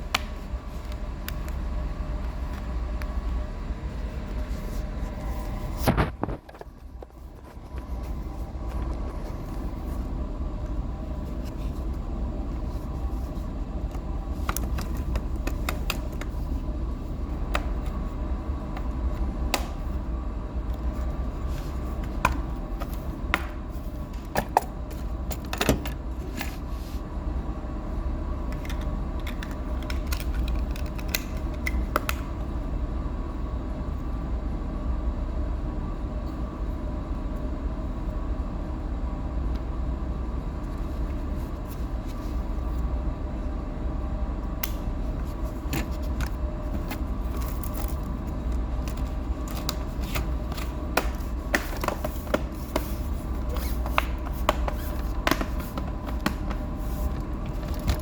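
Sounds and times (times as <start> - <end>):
low background hum: 0.0 - 58.0
hands clicking and scraping laptop: 12.8 - 16.6, 44.6 - 58.0.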